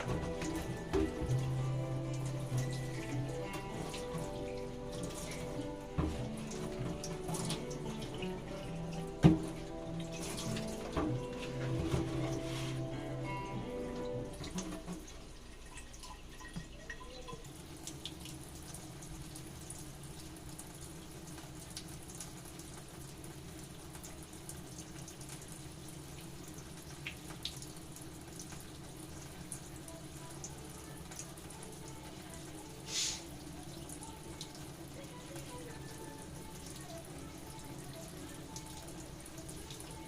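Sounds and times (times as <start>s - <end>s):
tap water running into sink: 0.0s - 40.0s
short hiss: 32.9s - 33.3s.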